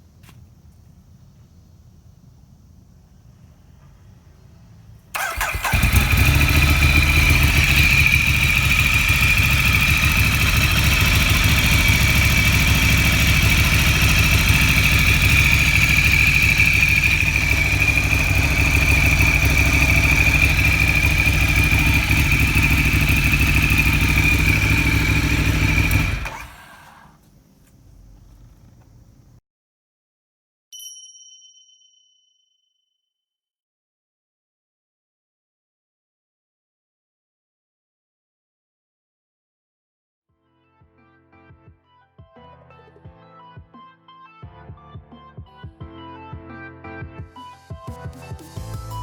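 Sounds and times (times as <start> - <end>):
motorcycle engine idling: 5.2 - 29.4.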